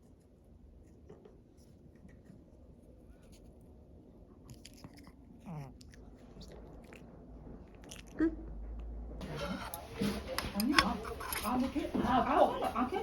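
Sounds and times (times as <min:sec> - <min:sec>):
dog chewing and gnawing: 0:04.5 - 0:07.1, 0:09.4 - 0:12.0.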